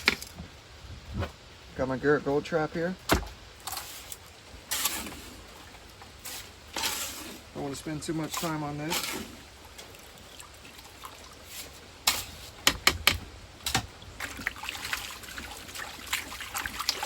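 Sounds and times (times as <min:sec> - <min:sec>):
sharp knocks: 0:03.1 - 0:03.4, 0:12.6 - 0:13.9
water trickling and splashing in pan: 0:03.7 - 0:12.6, 0:13.6 - 0:17.0.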